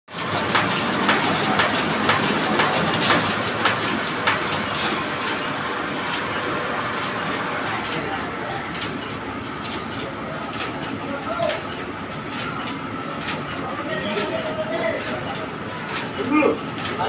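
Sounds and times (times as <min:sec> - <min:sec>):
heavy machinery droning: 0:00.1 - 0:13.0
sharp metallic clanks: 0:00.5 - 0:05.4.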